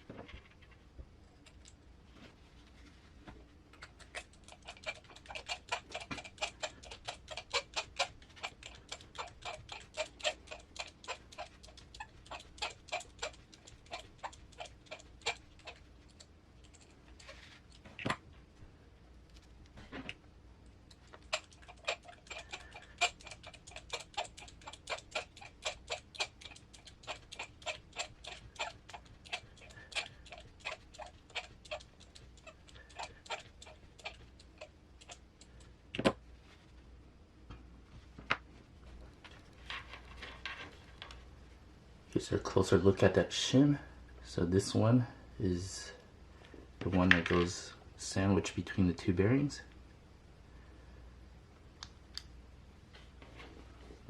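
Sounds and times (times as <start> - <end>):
rapid mechanical clicking: 4.0 - 16.9, 20.9 - 35.6.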